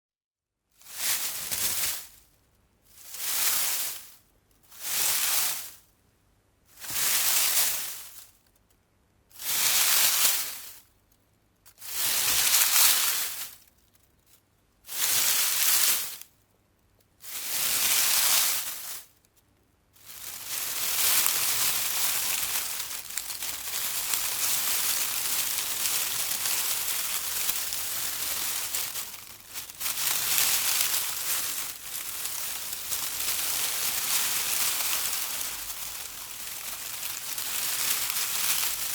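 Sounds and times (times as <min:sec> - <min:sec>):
bush leaves rustling: 0:00.9 - 0:02.2, 0:03.0 - 0:04.1, 0:04.8 - 0:05.7, 0:06.8 - 0:08.3, 0:09.4 - 0:10.8, 0:11.8 - 0:13.7, 0:14.9 - 0:16.2, 0:17.2 - 0:19.2, 0:20.0 - 0:38.9.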